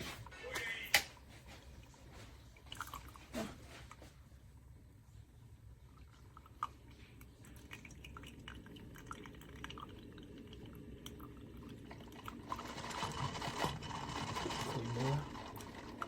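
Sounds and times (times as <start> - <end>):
coffee dripping into cup: 5.8 - 13.8
stream of liquid pouring: 5.9 - 16.0.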